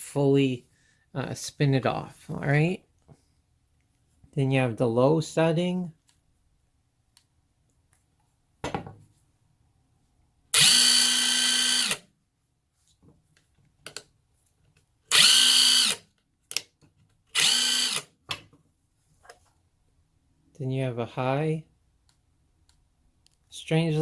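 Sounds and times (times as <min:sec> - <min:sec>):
impact wrench motor whining: 0:10.6 - 0:12.1, 0:15.1 - 0:16.0, 0:17.3 - 0:18.1.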